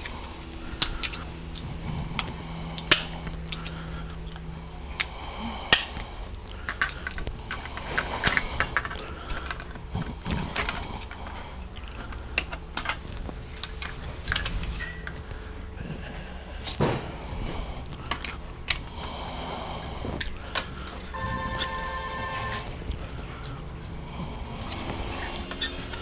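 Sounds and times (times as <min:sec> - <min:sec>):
metal parts clicking and clinking: 0:05.0 - 0:09.8.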